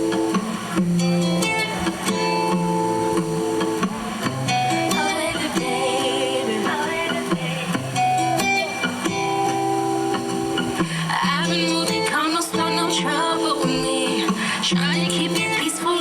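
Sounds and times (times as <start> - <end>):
guitar playing chords: 0.0 - 16.0
person singing: 3.8 - 16.0.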